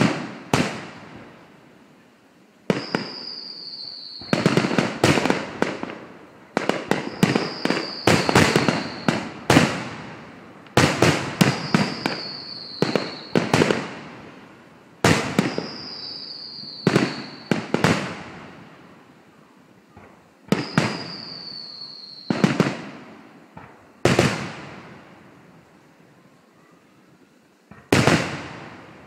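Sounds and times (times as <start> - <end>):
fireworks bangs: 0.0 - 1.5, 2.6 - 18.8, 19.9 - 25.6, 27.7 - 29.0
firework whistle: 2.7 - 10.0, 10.7 - 14.0, 15.0 - 18.3, 19.3 - 24.9.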